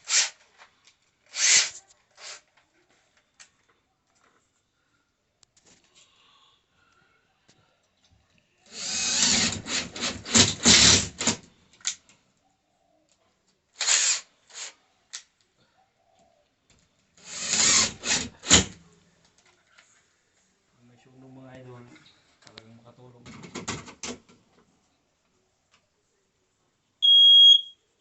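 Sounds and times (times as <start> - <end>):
power drill bursts: 0.0 - 0.4, 1.3 - 2.4, 8.7 - 11.4, 13.8 - 14.7, 17.2 - 18.8.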